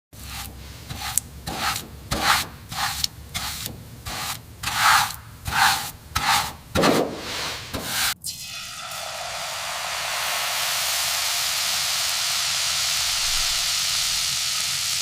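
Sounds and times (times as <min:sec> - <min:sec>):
hand sanding strokes: 0:00.2 - 0:08.2
steady hiss: 0:08.9 - 0:15.0.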